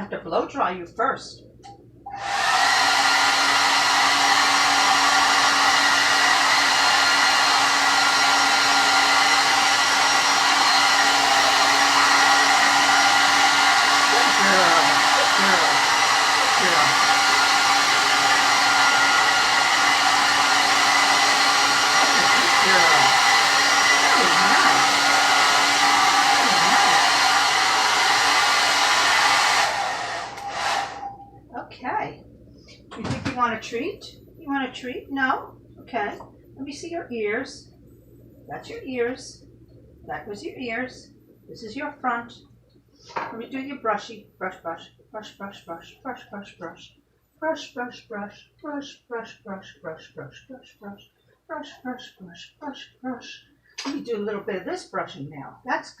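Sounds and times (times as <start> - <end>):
blow dryer blowing: 2.1 - 31.2.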